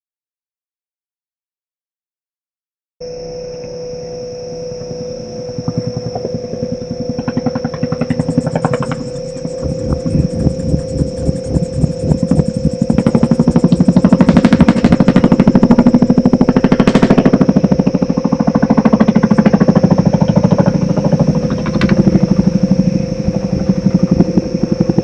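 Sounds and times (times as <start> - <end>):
rapid pulsing throb: 7.8 - 17.8.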